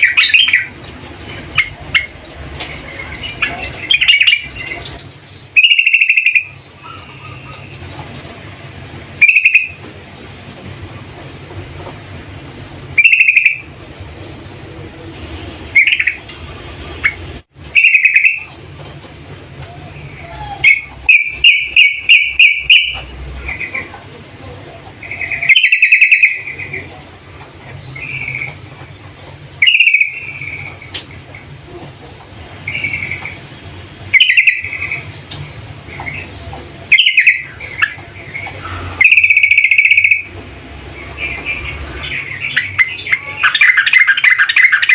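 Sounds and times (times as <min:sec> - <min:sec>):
bird call phrases: 0:00.0 - 0:13.8, 0:14.5 - 0:44.9.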